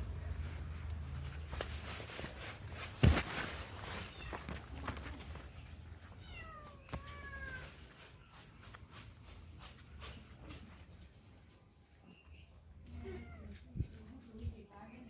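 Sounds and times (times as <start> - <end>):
faint clicking and rustling: 0.4 - 7.2, 12.3 - 15.0.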